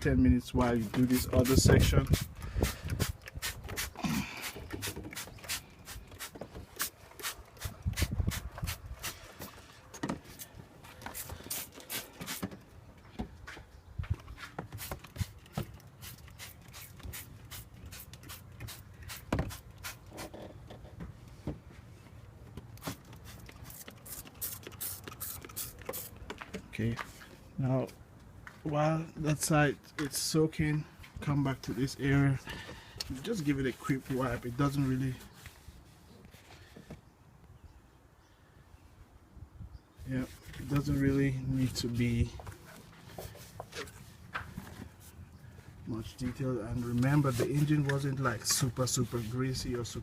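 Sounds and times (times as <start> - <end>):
spray bottle squirting: 1.1 - 9.2, 11.0 - 12.6, 14.7 - 20.3, 22.8 - 26.3
wind rumble on microphone: 1.4 - 3.6, 7.6 - 9.1.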